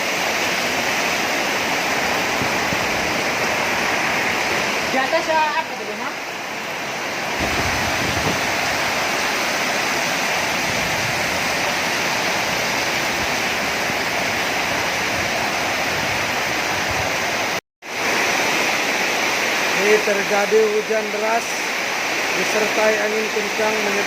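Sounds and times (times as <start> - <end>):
water rushing: 0.0 - 24.0.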